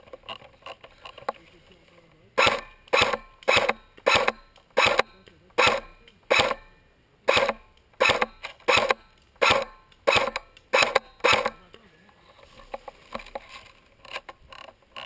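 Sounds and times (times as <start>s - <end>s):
airsoft gun shots: 2.4s - 11.7s.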